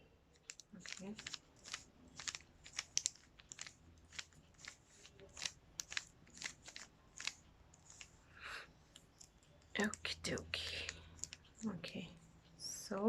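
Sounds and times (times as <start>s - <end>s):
puzzle cube plastic clicks: 0.4s - 8.2s, 8.9s - 11.7s.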